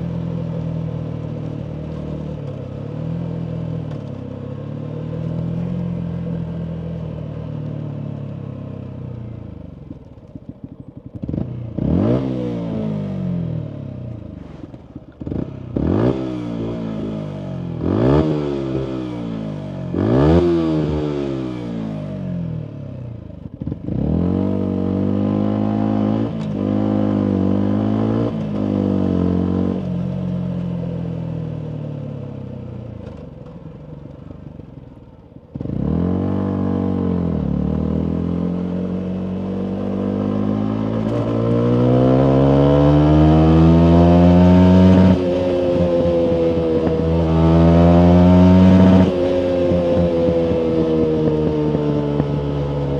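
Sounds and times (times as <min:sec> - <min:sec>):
motorcycle engine revving: 0:00.0 - 0:52.9
exhaust crackling: 0:38.9 - 0:52.9.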